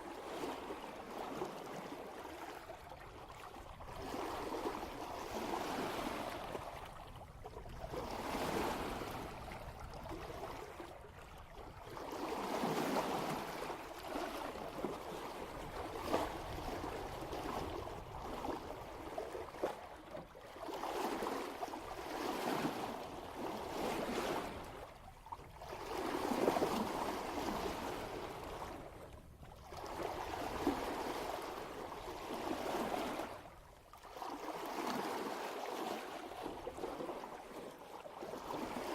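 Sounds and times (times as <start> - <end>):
water rushing at boat bow: 0.0 - 38.9.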